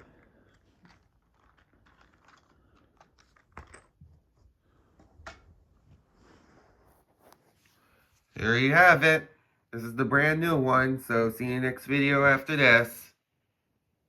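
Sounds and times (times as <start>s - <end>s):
packaging rustling: 0.0s - 4.2s.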